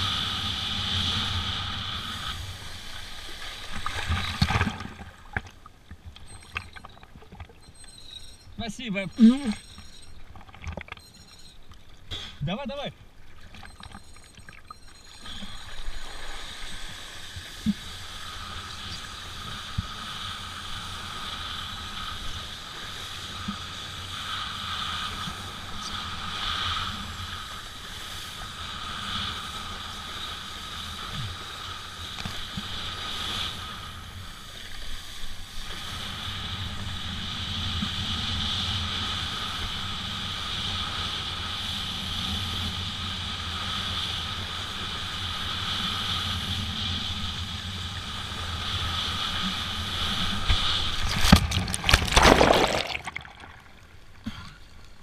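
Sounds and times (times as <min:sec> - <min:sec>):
water rushing: 0:50.1 - 0:54.0.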